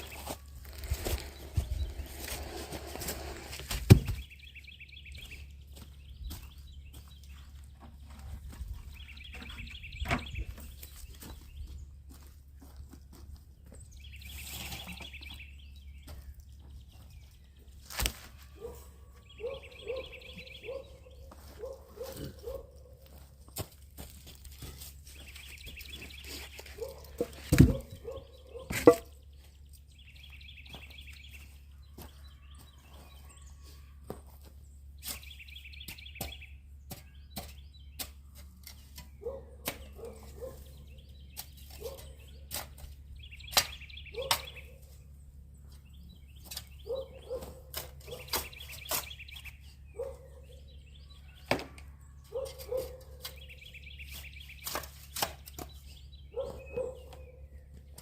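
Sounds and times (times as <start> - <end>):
building work knocks and thuds: 3.6 - 4.4, 27.2 - 28.0.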